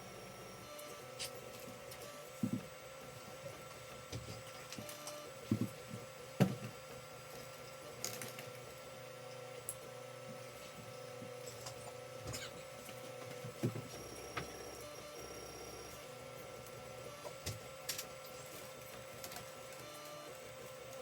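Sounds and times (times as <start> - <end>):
stepper motors whining: 0.0 - 2.8, 11.1 - 21.0.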